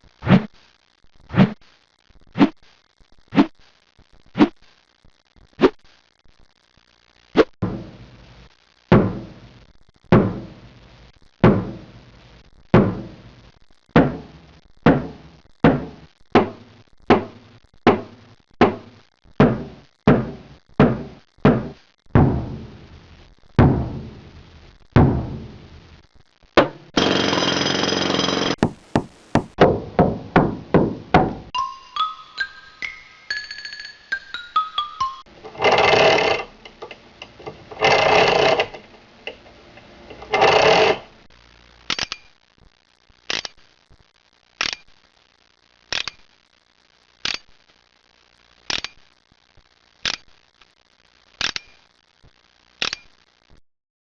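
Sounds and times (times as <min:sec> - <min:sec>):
tones stepping upward in pitch: 0:31.6 - 0:35.3.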